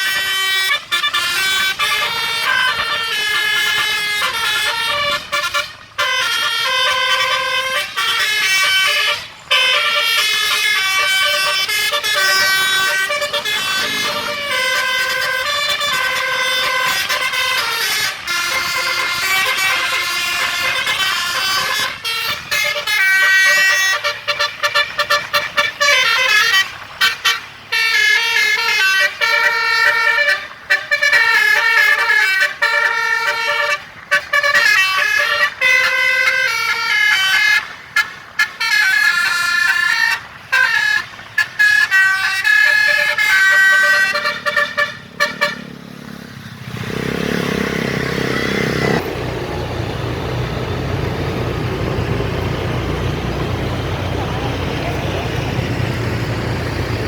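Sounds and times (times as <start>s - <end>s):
melody bus horn: 0.0s - 57.0s.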